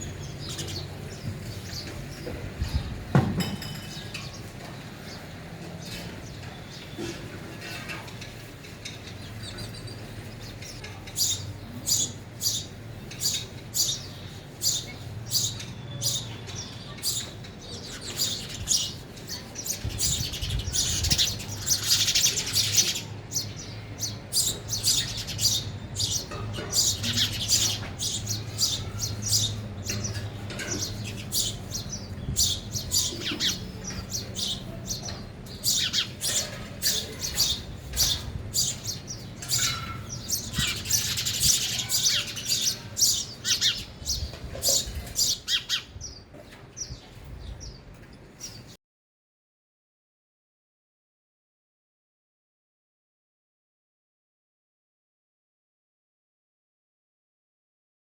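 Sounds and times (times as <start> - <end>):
sparrows chirping: 0.0 - 48.8.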